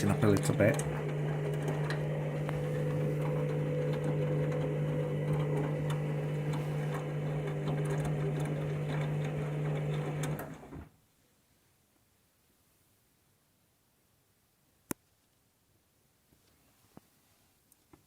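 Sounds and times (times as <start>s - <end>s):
washing machine motor hum: 0.0s - 11.0s.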